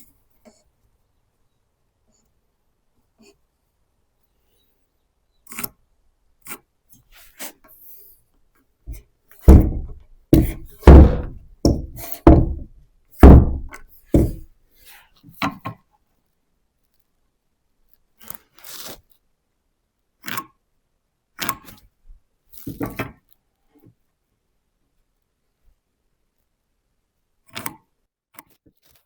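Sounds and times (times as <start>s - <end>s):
heavy thuds and knocks: 9.4s - 14.5s.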